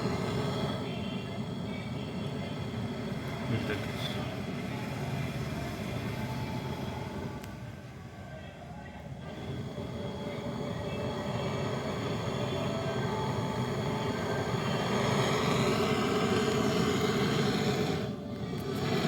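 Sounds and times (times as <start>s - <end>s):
machine humming: 0.0s - 4.2s, 9.2s - 19.0s.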